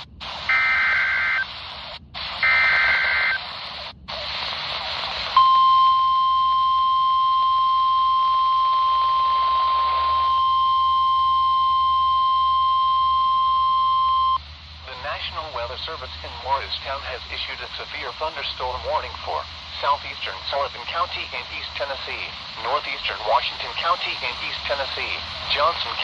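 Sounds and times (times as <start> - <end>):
radio static hiss: 0.0 - 26.0
steady warning alarm tone: 0.5 - 1.5, 2.4 - 3.4, 5.4 - 14.4
data tone bursts: 0.5 - 1.6, 2.4 - 3.4, 5.4 - 14.4.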